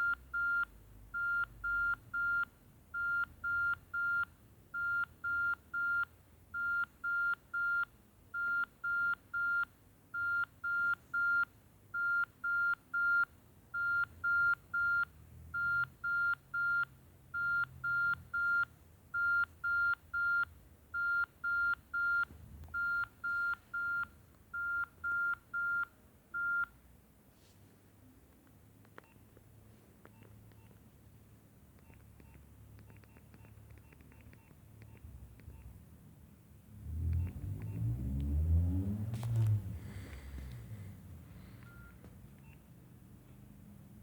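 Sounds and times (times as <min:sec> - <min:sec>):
phone ringtone beeps: 0:13.8 - 0:15.0, 0:15.6 - 0:16.8, 0:17.4 - 0:18.6, 0:22.8 - 0:24.0, 0:24.6 - 0:26.7.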